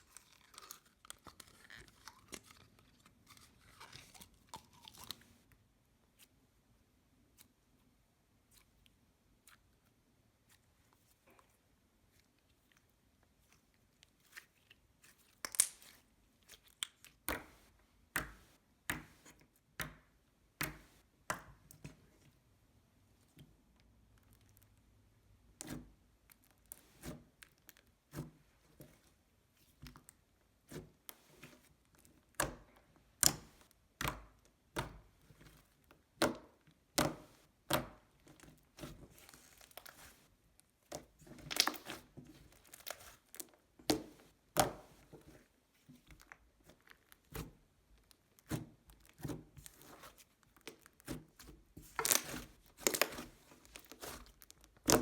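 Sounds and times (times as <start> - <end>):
slime popping and crackling: 15.4 - 15.9, 41.4 - 44.0, 51.8 - 55.0.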